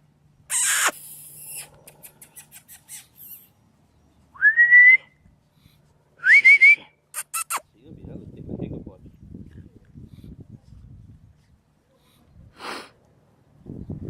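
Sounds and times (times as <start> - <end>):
person whistling: 4.4 - 5.1, 6.2 - 6.9.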